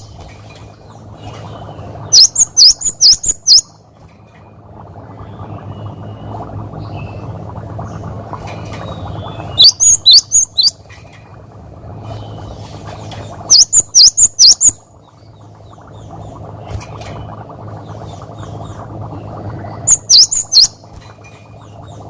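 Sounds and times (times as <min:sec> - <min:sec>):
bird whistled song: 0:01.5 - 0:03.8, 0:08.9 - 0:10.8, 0:13.5 - 0:14.8, 0:19.8 - 0:20.8.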